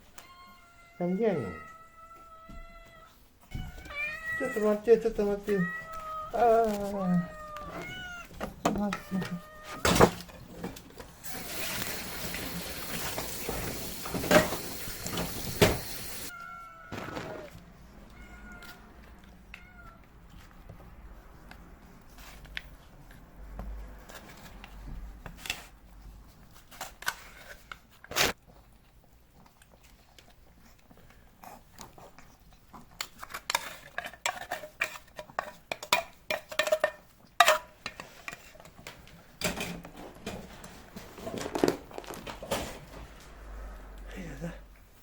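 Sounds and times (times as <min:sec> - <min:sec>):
cats meowing: 0:00.0 - 0:10.6, 0:16.2 - 0:20.4.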